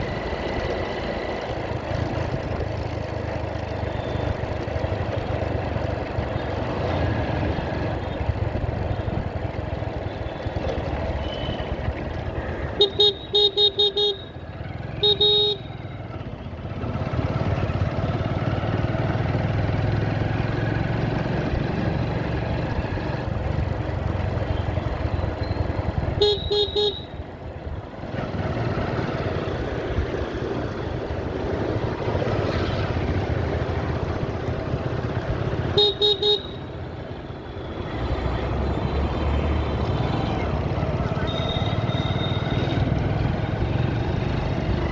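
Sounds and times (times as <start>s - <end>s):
motorcycle engine: 0.0s - 44.9s
road noise: 0.0s - 44.9s
horn short beeps: 26.2s - 27.2s, 41.2s - 42.7s.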